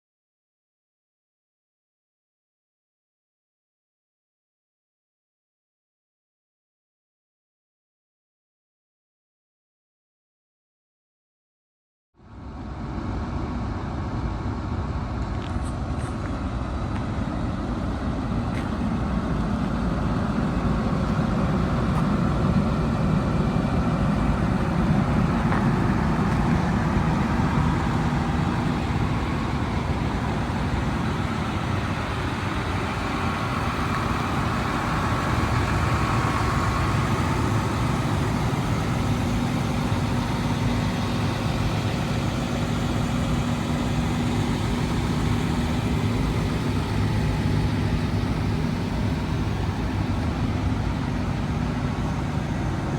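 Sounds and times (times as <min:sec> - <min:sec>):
diesel engine idling: 0:12.2 - 0:52.9.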